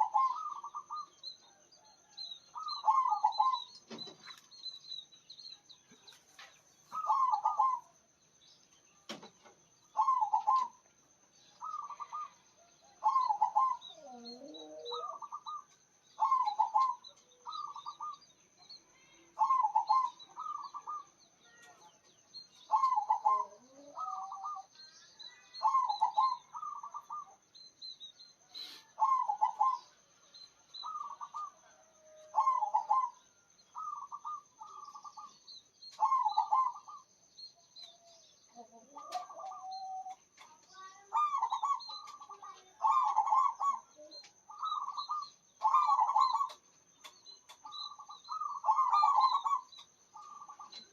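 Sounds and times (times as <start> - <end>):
dove cooing: 0.0 - 4.4, 6.9 - 7.9, 9.9 - 10.8, 11.5 - 18.2, 19.3 - 21.8, 22.6 - 27.4, 28.5 - 30.0, 30.8 - 37.1, 37.8 - 46.6, 47.5 - 50.9.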